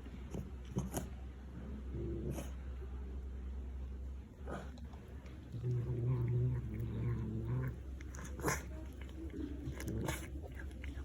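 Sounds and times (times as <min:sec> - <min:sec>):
cat growling: 0:04.4 - 0:11.0.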